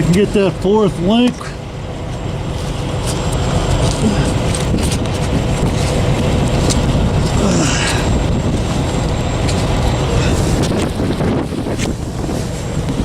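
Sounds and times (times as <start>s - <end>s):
truck engine idling: 0.0s - 13.0s
wind on microphone: 3.0s - 13.0s.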